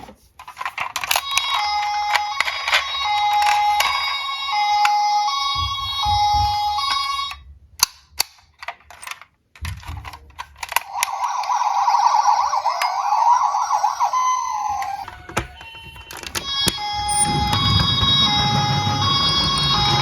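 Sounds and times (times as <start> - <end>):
siren warbling: 1.2 - 7.4, 10.9 - 20.0.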